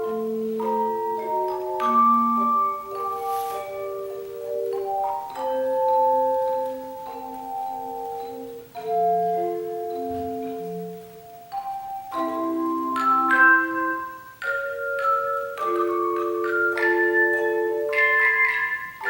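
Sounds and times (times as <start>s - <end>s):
chime bars ringing: 11.5s - 19.0s.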